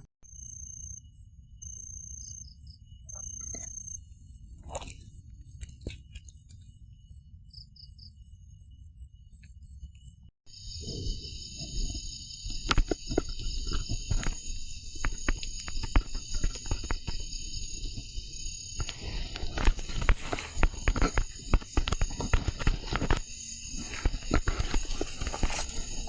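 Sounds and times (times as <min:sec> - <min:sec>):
insect chorus buzzing: 0:00.3 - 0:26.0
knocks and crackles on forest ground: 0:04.6 - 0:06.7, 0:12.4 - 0:18.2, 0:18.8 - 0:26.0.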